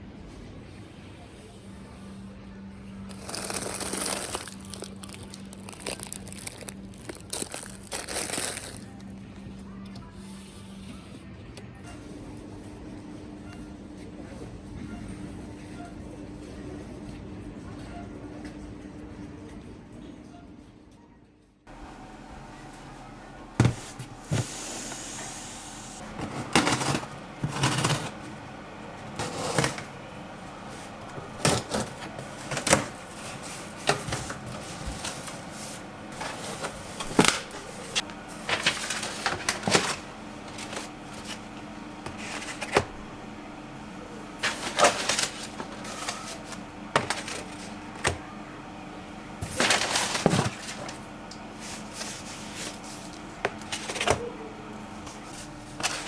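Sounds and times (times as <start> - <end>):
objects clattering: 21.7 - 43.4, 44.4 - 48.2, 49.4 - 54.4
steady low hum: 21.7 - 56.0.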